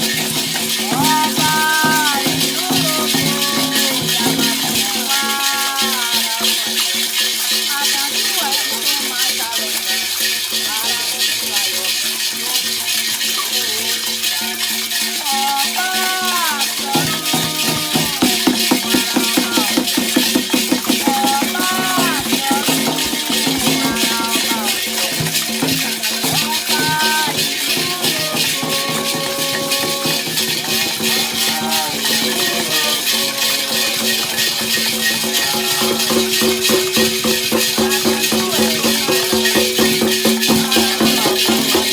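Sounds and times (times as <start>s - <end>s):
voices singing: 0.0s - 41.9s
fast low drumbeat: 17.0s - 33.0s.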